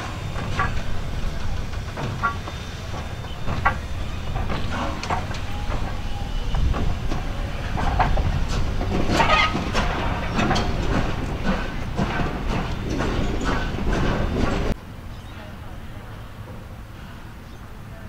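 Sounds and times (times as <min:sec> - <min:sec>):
wheels clicking and creaking: 0:00.0 - 0:14.8
train low rumble: 0:00.0 - 0:18.0.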